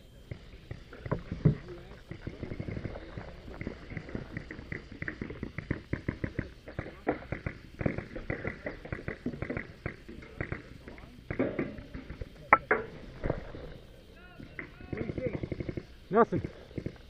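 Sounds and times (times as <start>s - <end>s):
paintball markers firing: 1.5s - 13.5s, 14.4s - 17.0s.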